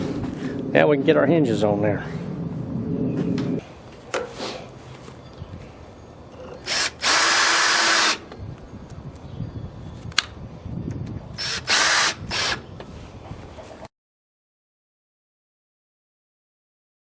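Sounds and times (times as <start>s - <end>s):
power drill running in bursts: 6.6s - 8.2s, 11.4s - 12.6s.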